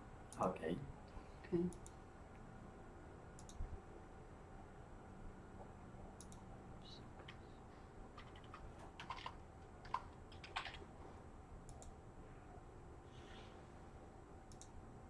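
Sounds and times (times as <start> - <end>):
computer keyboard keystrokes: 3.4 - 3.6, 8.2 - 10.9.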